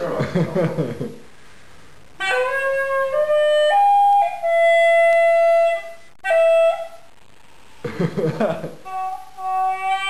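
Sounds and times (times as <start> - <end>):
gourd pipe melody: 2.2 - 7.1, 8.6 - 10.0.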